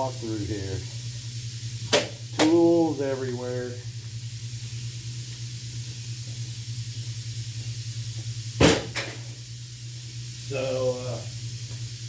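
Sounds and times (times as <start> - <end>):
low hum with hiss: 0.0 - 12.0
sharp knock: 8.6 - 9.2.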